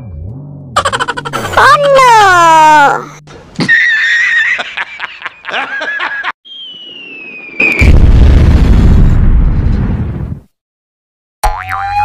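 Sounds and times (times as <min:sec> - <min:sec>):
whistle sliding down in pitch: 0:06.4 - 0:07.9
deep explosion boom: 0:07.4 - 0:10.4.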